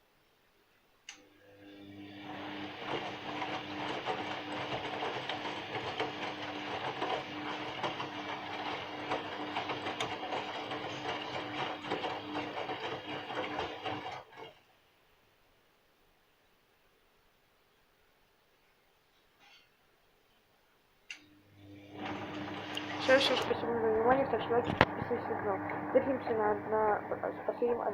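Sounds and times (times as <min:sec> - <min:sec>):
washing machine motor hum: 0:01.1 - 0:14.6, 0:21.1 - 0:27.9
rapid rattling and clicking: 0:03.0 - 0:14.6.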